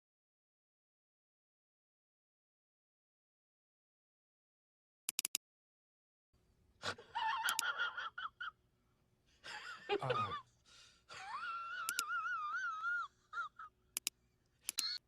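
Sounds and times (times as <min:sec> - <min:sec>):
quick clicks: 0:05.1 - 0:05.4, 0:07.4 - 0:07.7, 0:11.8 - 0:12.1, 0:14.0 - 0:15.0
squeaky voice-like sounds: 0:14.7 - 0:15.0.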